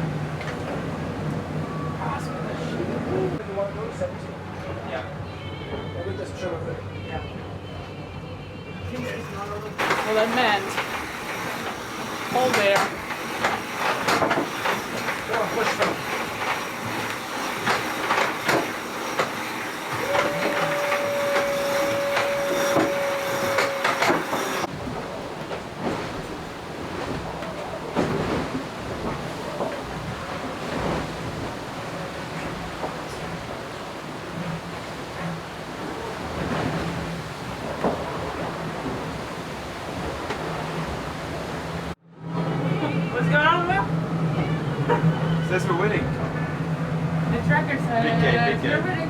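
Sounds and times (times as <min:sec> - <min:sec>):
steady high hum: 0:08.9 - 0:44.9
hull and gear knocking: 0:09.0 - 0:42.0
rush of water and wind: 0:09.2 - 0:42.0.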